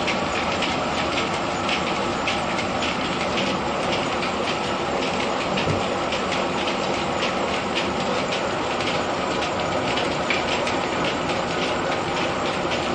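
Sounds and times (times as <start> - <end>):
threshing machinery rumbling: 0.0 - 12.9.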